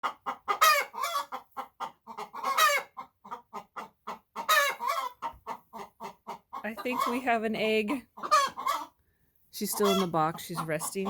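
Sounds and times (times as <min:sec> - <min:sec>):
hens clucking rapidly: 0:00.0 - 0:09.0, 0:09.6 - 0:11.0
hen squawking: 0:06.6 - 0:08.9, 0:09.6 - 0:11.0.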